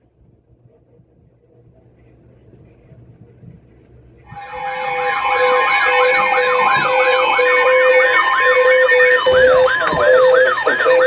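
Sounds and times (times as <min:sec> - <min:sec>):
low pulsing tone: 0:04.3 - 0:11.0
siren yelping: 0:04.3 - 0:11.0.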